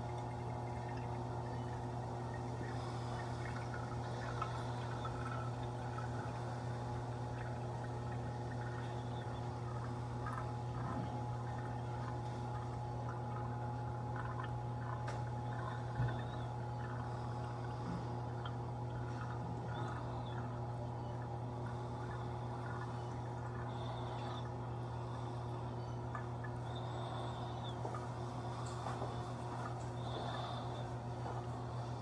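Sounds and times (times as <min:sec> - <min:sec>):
trickling splashing water: 0:00.0 - 0:25.2
aquarium equipment humming: 0:00.0 - 0:32.0.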